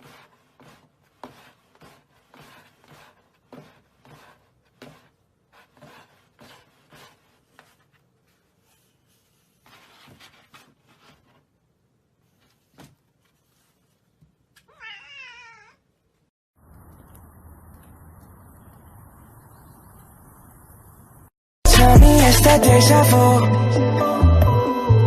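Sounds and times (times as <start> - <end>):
faint taps and rustles: 12.3 - 14.7
cat meowing: 14.6 - 15.9.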